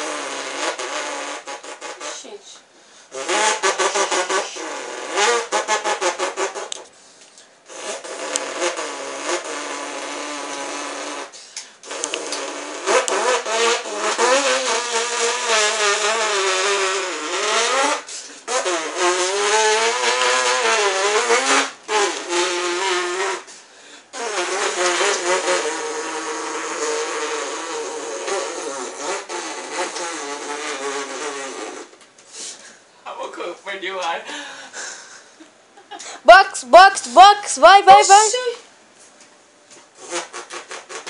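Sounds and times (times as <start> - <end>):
person imitating car engine: 3.1 - 6.8, 36.0 - 38.6.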